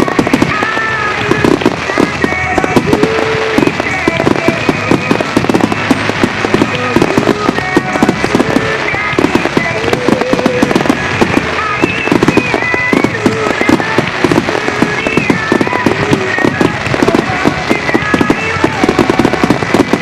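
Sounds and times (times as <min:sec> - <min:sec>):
fireworks booms and crackles: 0:00.0 - 0:20.0.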